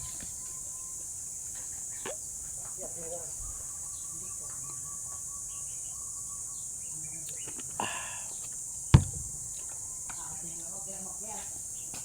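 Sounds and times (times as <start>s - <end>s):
insects chirring: 0.0s - 12.0s
sharp knock: 9.0s - 9.4s.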